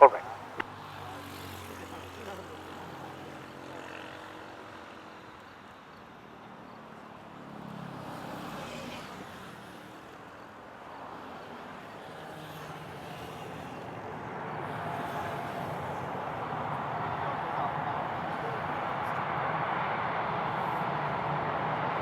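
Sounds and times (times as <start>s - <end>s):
jet engines rumbling: 0.0s - 0.6s, 14.4s - 22.0s.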